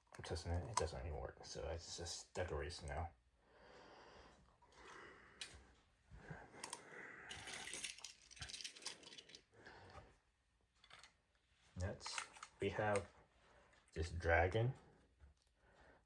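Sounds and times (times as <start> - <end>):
light clicks of plastic toys: 6.5 - 10.0.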